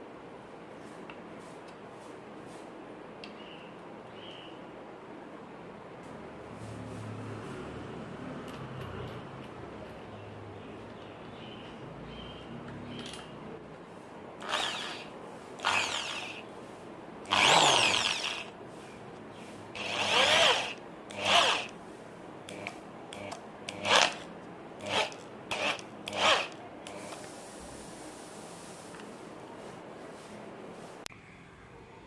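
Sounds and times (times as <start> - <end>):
electric drill drilling into wood: 14.4 - 16.4, 17.3 - 18.5, 19.8 - 21.7, 22.5 - 27.2.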